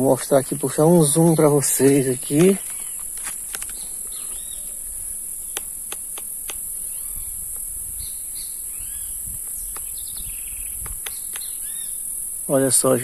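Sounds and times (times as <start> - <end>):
birds chirping: 0.0 - 13.0
insects droning: 0.0 - 13.0
sharp clicks: 1.8 - 4.4, 5.5 - 6.7, 9.4 - 11.7.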